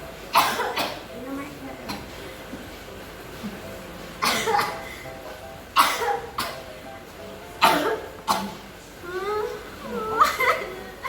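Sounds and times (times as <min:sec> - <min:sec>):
person coughing harshly: 0:00.4 - 0:01.0, 0:04.2 - 0:05.0, 0:05.8 - 0:06.6, 0:07.6 - 0:08.6.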